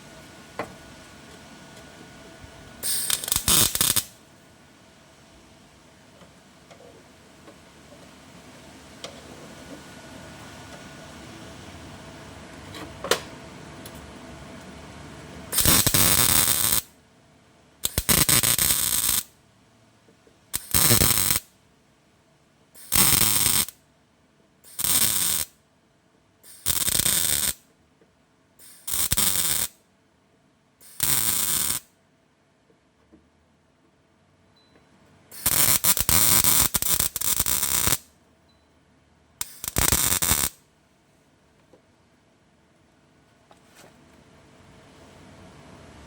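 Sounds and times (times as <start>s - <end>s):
welder arc bursts: 2.8s - 4.2s, 15.5s - 16.9s, 17.8s - 19.3s, 20.6s - 21.5s, 22.8s - 23.8s, 24.7s - 25.6s, 26.5s - 27.6s, 28.6s - 29.8s, 30.8s - 31.9s, 35.3s - 38.1s, 39.4s - 40.6s.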